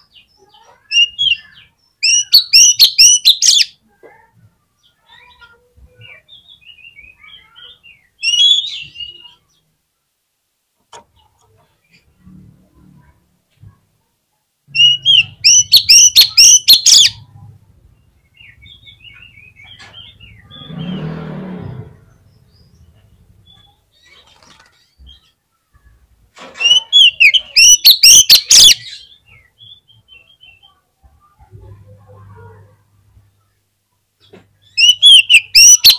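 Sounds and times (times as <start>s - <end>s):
faint bird chirps: 0.0s - 9.8s, 14.0s - 32.7s, 34.2s - 35.9s
songbird singing rising notes: 14.7s - 17.3s, 18.0s - 23.8s, 26.7s - 30.6s, 34.7s - 35.9s.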